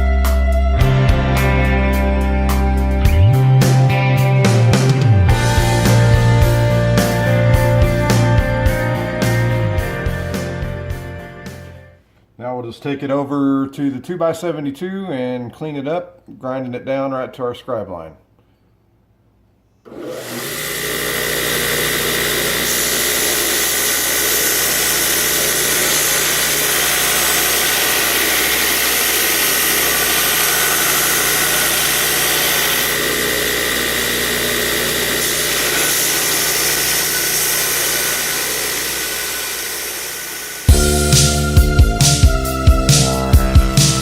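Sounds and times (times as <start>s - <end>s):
belt grinder grinding steel: 19.9s - 44.0s.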